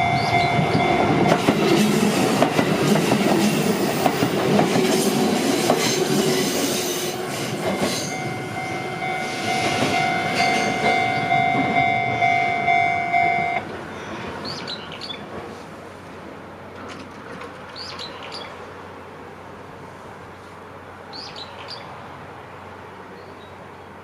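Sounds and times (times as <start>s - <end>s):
crossing warning bell ringing: 0.0s - 1.9s, 7.1s - 13.7s
electric train rumble: 0.0s - 17.6s
train wheels clicking over rail joints: 0.4s - 8.6s, 16.7s - 18.0s.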